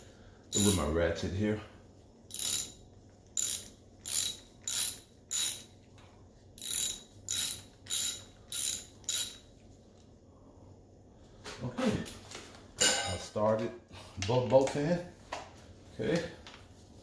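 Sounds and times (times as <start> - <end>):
hand ratchet clicking: 0.5 - 0.8, 2.3 - 5.7, 6.6 - 9.4.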